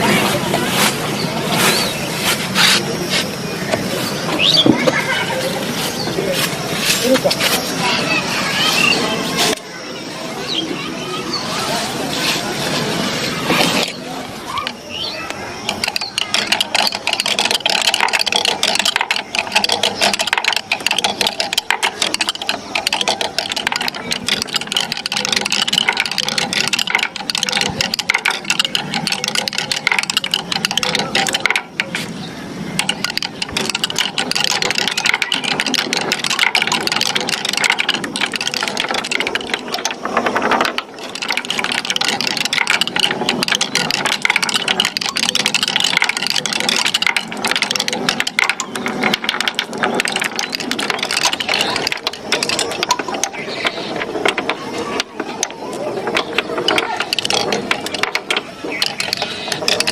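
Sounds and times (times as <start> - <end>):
marbles rattling down wooden run: 11.5 - 59.9.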